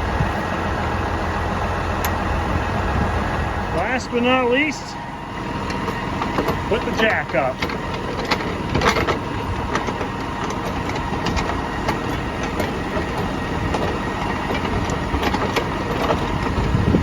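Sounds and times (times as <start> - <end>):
tractor engine idling: 0.0 - 17.0
parking jack clicks: 5.6 - 17.0.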